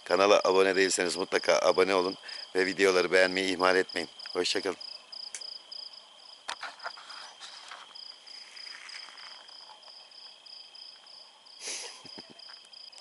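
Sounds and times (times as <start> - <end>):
crickets chirping: 0.0 - 13.0
faint insect whine: 0.0 - 13.0.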